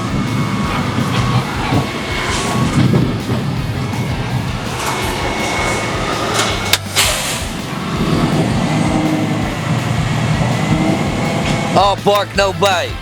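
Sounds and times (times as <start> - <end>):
truck engine running: 0.0 - 13.0.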